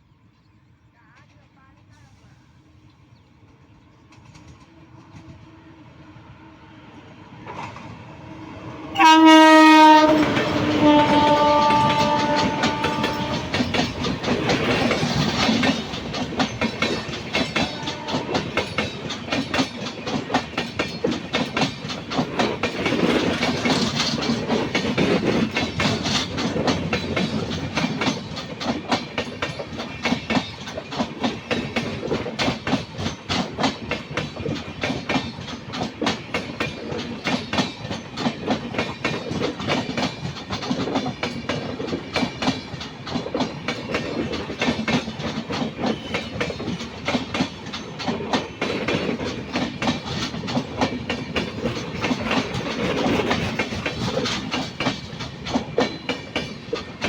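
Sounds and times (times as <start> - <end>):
train wheels clattering over rail joints: 3.4 - 5.6, 7.4 - 57.0
train horn blasts: 8.8 - 14.0, 17.4 - 18.7.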